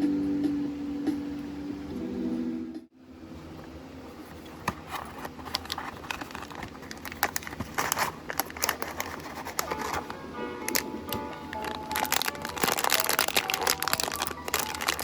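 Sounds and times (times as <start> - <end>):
packaging crackling and crinkling: 4.6 - 15.0.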